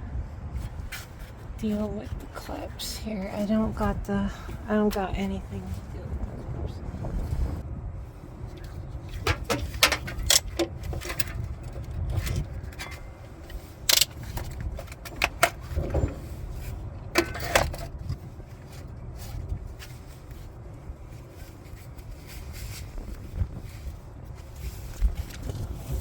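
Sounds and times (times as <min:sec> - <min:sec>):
low rumble: 0:00.0 - 0:26.0
metal tools clinking: 0:09.3 - 0:16.3.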